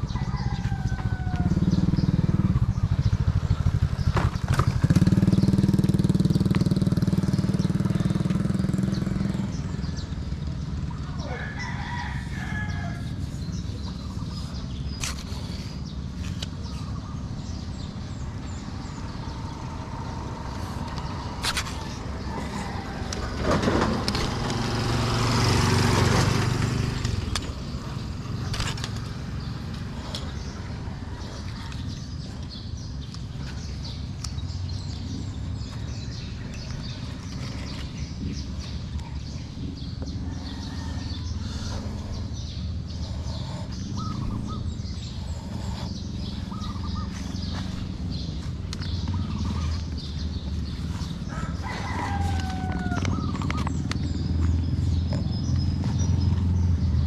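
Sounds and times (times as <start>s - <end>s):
rooster crowing: 0.0s - 1.9s, 11.2s - 13.2s, 22.2s - 23.7s, 40.2s - 41.4s, 51.2s - 53.5s
low engine hum: 0.0s - 57.0s.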